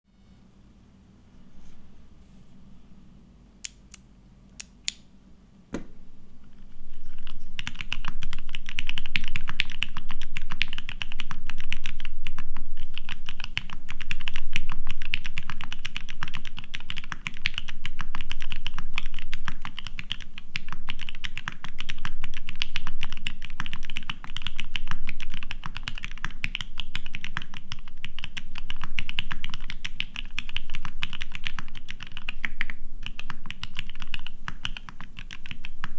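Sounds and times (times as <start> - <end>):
knock: 5.7 - 6.0
typing on mechanical keyboard: 6.6 - 35.9.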